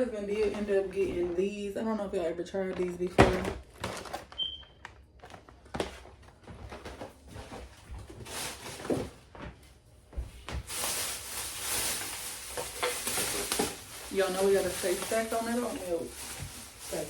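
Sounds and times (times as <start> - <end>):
items knocking and clunking: 2.6 - 4.4
packaging rustling: 2.7 - 9.3, 10.6 - 17.0.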